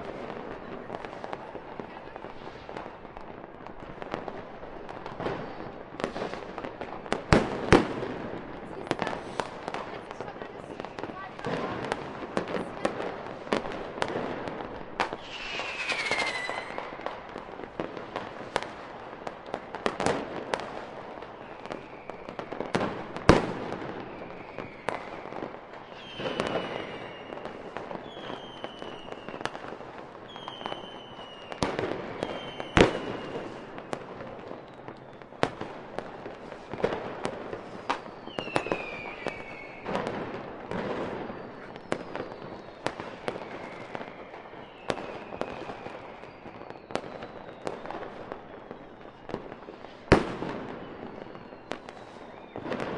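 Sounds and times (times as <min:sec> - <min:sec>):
firework bangs and crackling: 0:00.0 - 0:52.9
firework whistles falling in pitch: 0:15.0 - 0:17.2, 0:24.0 - 0:29.5, 0:30.3 - 0:33.7, 0:37.8 - 0:40.1, 0:41.2 - 0:49.3, 0:50.7 - 0:52.9.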